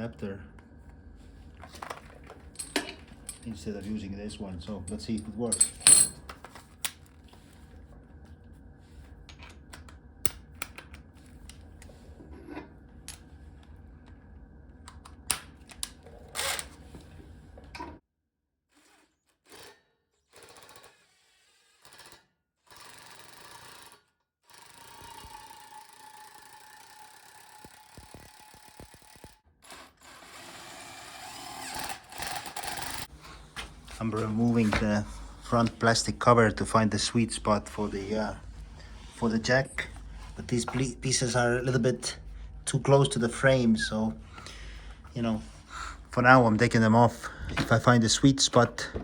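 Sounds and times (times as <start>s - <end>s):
faint room hum: 0.0s - 18.0s, 28.0s - 49.0s.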